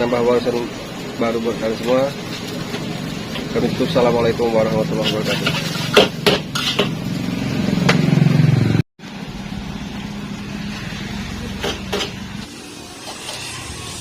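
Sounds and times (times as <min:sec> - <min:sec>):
engine droning: 0:06.8 - 0:14.0.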